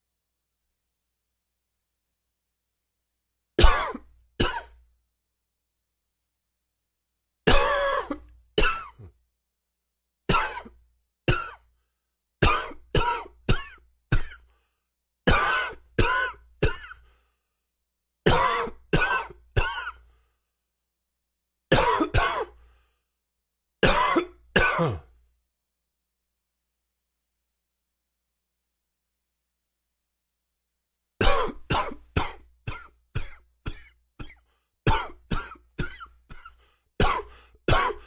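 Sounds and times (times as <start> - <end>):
man coughing: 3.6 - 4.8, 7.5 - 9.2, 10.3 - 11.7, 12.4 - 14.5, 15.3 - 17.0, 18.3 - 20.0, 21.7 - 22.6, 23.8 - 25.1, 31.2 - 38.0.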